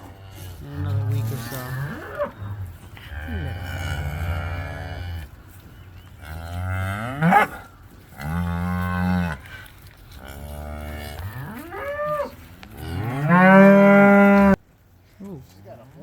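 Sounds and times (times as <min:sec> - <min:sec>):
cattle mooing: 0:00.0 - 0:05.3, 0:10.2 - 0:14.6.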